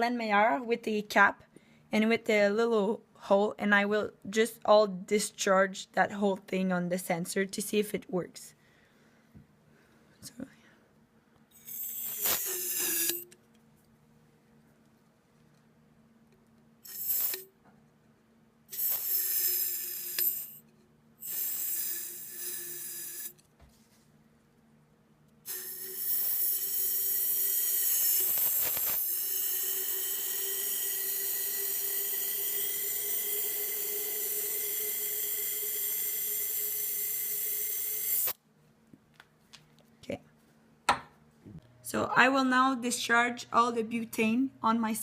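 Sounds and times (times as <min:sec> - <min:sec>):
gas hissing from canister: 0:11.5 - 0:13.2, 0:16.8 - 0:17.5, 0:18.7 - 0:20.6, 0:21.2 - 0:23.3, 0:25.5 - 0:38.4.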